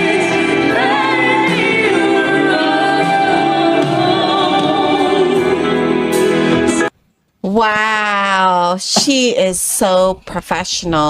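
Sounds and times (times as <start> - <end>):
woman singing with music: 0.0 - 6.9.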